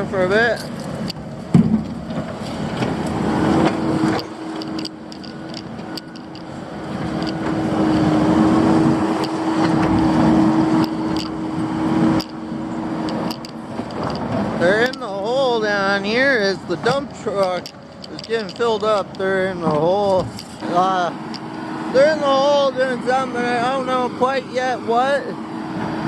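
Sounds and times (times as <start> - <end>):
vehicle engine humming: 0.0 - 26.0
light clicks and knocks: 13.0 - 15.4, 16.8 - 21.6.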